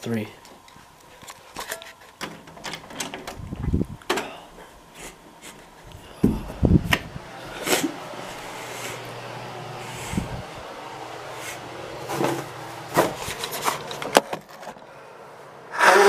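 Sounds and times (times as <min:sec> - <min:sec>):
steady low hum: 0:00.0 - 0:15.8
clicks and rustles of handling: 0:13.0 - 0:14.9.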